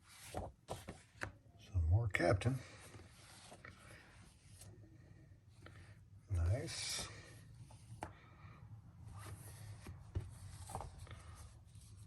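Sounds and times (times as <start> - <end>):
paper comic books rustling: 0.0 - 1.4, 2.6 - 4.8, 9.0 - 12.0.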